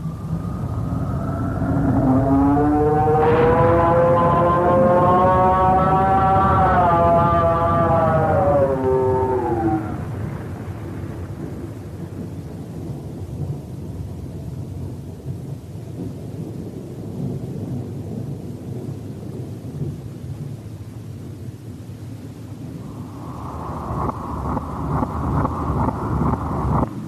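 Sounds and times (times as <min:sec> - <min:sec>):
rolling thunder rumble: 0:00.0 - 0:27.0.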